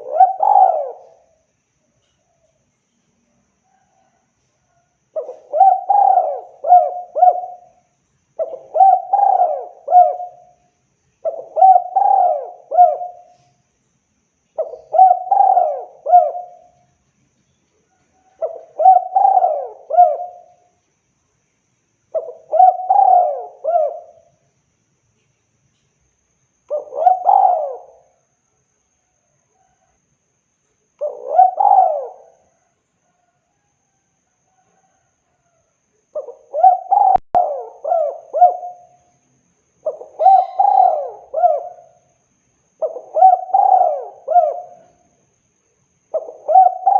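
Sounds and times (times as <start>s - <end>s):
dove cooing: 0.0s - 1.4s, 4.8s - 7.8s, 8.4s - 10.6s, 11.2s - 13.5s, 14.6s - 16.8s, 18.2s - 20.7s, 22.1s - 24.4s, 26.7s - 28.2s, 31.0s - 33.7s, 36.1s - 39.1s, 39.8s - 42.1s, 42.8s - 45.2s, 46.1s - 46.9s.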